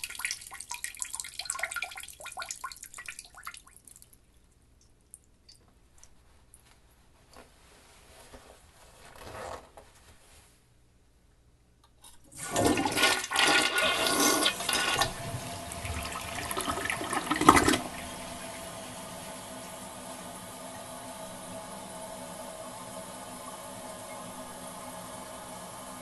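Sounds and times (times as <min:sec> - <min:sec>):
toilet flushing: 0:00.0 - 0:03.4, 0:12.3 - 0:26.0
running water hiss: 0:12.4 - 0:26.0.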